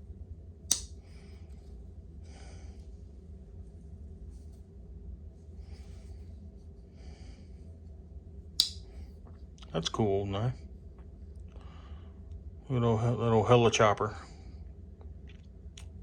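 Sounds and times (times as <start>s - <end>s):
low steady hum: 0.0s - 16.0s
pocket knife click: 0.7s - 1.0s, 8.6s - 8.9s
soft breaths: 1.0s - 3.2s, 5.4s - 8.0s, 10.6s - 12.3s.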